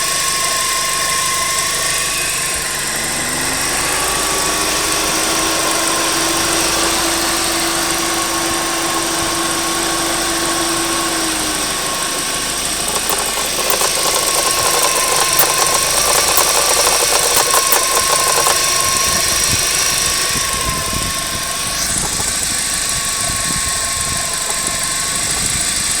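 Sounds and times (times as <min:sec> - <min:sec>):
car engine idling: 0:11.8 - 0:26.0
steady whine: 0:12.5 - 0:26.0
rapid ticking: 0:12.8 - 0:26.0.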